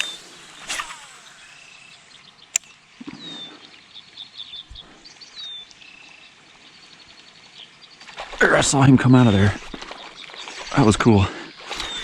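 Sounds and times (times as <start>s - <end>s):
sharp click: 0.0s - 1.0s, 2.5s - 2.8s
birds chirping: 0.0s - 12.0s.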